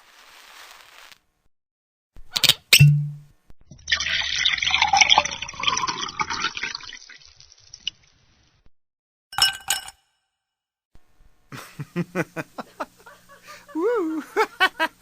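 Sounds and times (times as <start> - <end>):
water pouring: 2.8 - 8.0.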